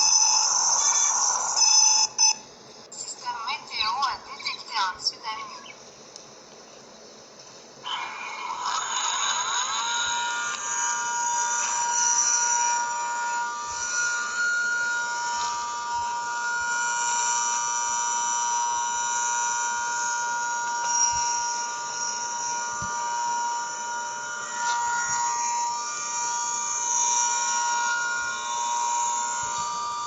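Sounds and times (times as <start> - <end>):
electronic alarm tones: 0.0 - 3.2.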